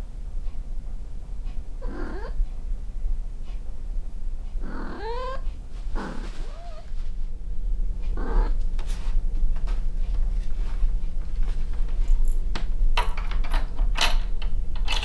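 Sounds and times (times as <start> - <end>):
kitten meowing: 8.2 - 8.6.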